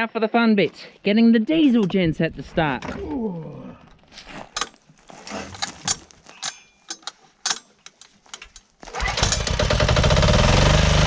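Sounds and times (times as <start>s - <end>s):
diesel engine starting and running: 8.9s - 11.0s.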